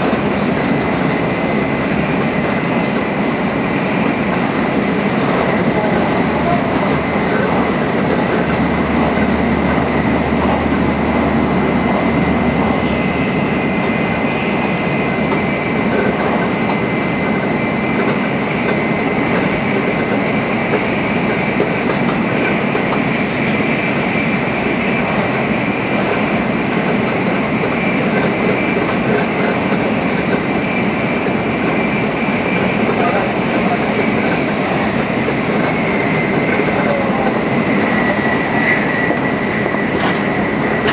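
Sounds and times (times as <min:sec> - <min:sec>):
train wheels rumbling: 0:00.0 - 0:18.3, 0:33.0 - 0:40.9.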